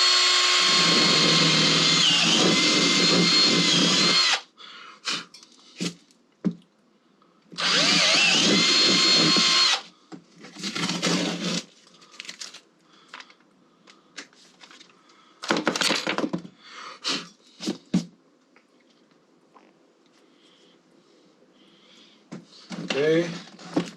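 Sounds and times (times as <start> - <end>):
power drill whining: 0.0 - 4.5, 7.6 - 9.9.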